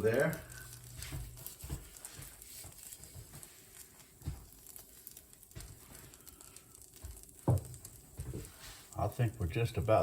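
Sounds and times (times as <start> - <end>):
batter sizzling in a pan: 0.0 - 10.0.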